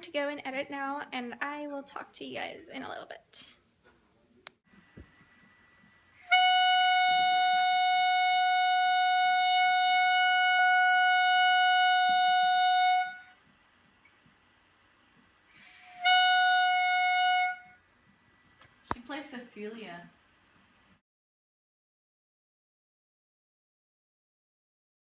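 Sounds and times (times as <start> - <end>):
reedy buzzy high note: 6.0 - 13.4.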